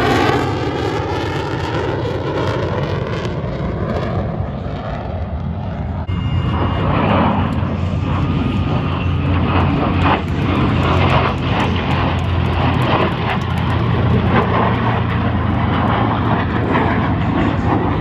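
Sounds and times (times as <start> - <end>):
airplane engine drone: 0.0 - 18.0
wide rushing noise: 6.0 - 18.0.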